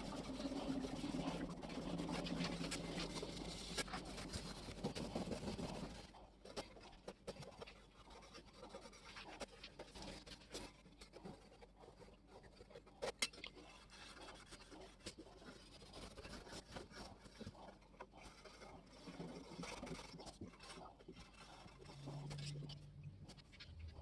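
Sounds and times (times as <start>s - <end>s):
faint scratching and rubbing: 0.0s - 24.0s.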